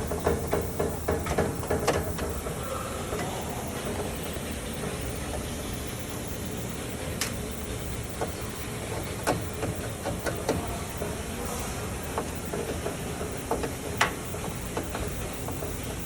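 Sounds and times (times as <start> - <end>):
wiring clicks and taps: 0.0 - 2.5, 7.2 - 11.1, 12.0 - 16.0
steady low hum: 0.0 - 16.0.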